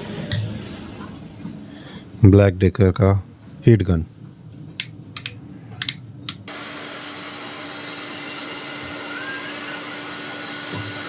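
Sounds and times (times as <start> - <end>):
sharp clicks: 4.8 - 6.5
heat gun blowing air: 6.5 - 11.0.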